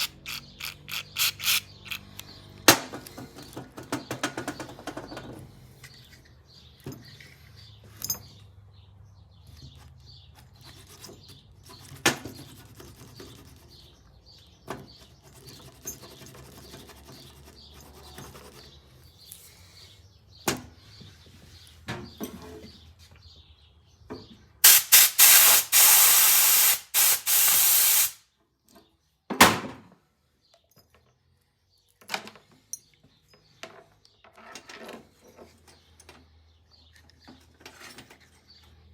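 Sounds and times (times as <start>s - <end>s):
small parts clicking and knocking: 0.0s - 8.4s
aerosol spray bursts: 24.6s - 28.2s.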